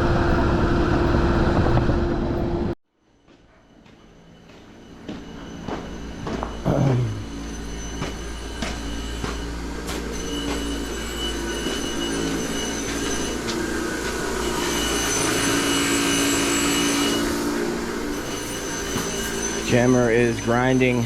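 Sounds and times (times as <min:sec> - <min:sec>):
grinder grinding metal: 0:04.2 - 0:21.0.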